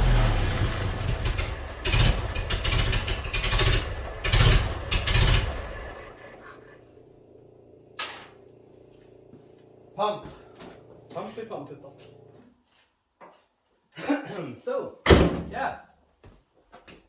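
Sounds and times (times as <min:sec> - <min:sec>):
engine running unevenly and revving: 0:00.0 - 0:12.4.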